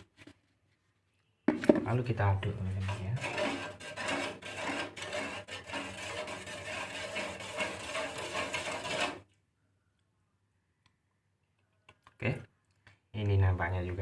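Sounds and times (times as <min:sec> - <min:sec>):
spatula scraping a pan: 0:02.5 - 0:09.3.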